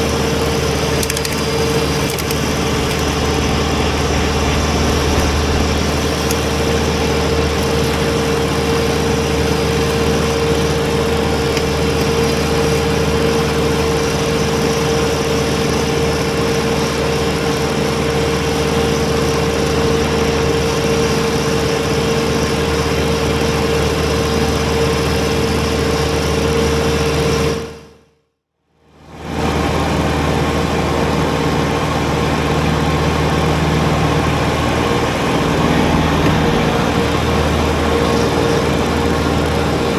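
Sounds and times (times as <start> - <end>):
steady whine: 0.0 - 12.1, 33.6 - 39.9
tractor diesel engine running: 0.0 - 25.4, 30.0 - 39.9.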